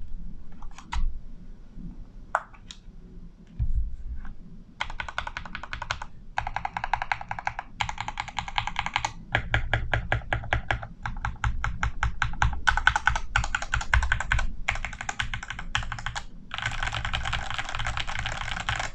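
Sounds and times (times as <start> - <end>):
mechanical keyboard typing: 4.8 - 18.9.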